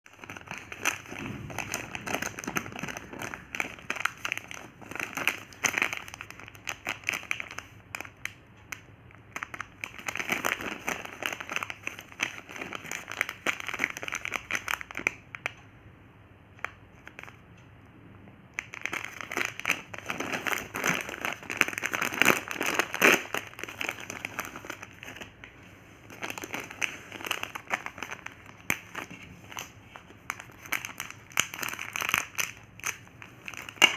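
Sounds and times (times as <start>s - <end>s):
plastic packets crinkling: 0.1s - 15.5s, 18.6s - 33.9s.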